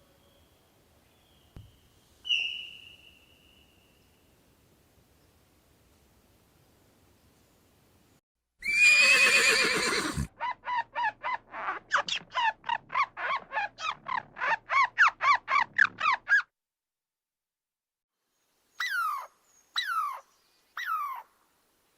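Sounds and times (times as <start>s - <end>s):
animal calling harshly: 8.6s - 16.5s.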